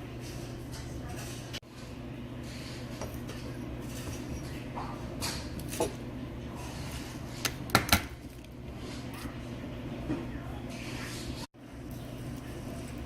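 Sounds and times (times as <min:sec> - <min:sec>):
kitchenware clinking: 0:00.2 - 0:09.4.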